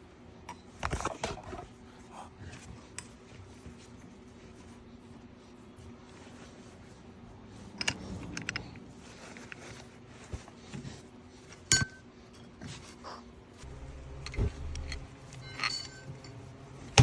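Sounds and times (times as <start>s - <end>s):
metal tools clinking on work surface: 14.0s - 16.5s.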